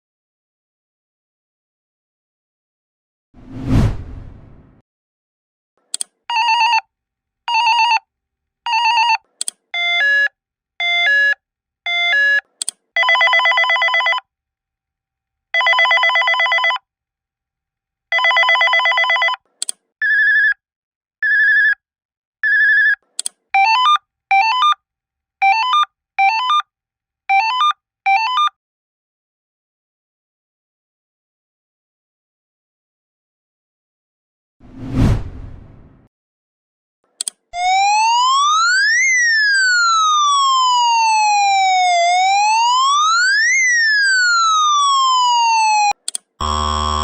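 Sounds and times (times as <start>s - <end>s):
electronic alarm buzzer tones: 45.7s - 47.0s.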